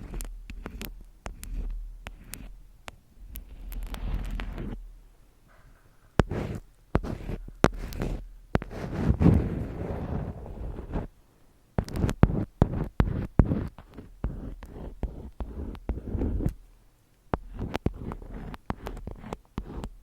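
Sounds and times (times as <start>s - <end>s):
sharp taps and clicks: 0.0s - 4.8s, 6.2s - 8.8s, 11.8s - 16.6s, 17.3s - 20.0s.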